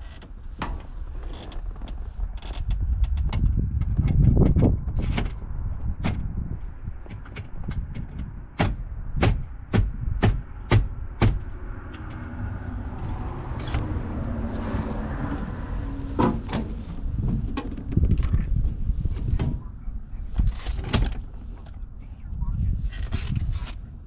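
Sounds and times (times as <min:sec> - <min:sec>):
sharp knocks: 0:08.0 - 0:11.5.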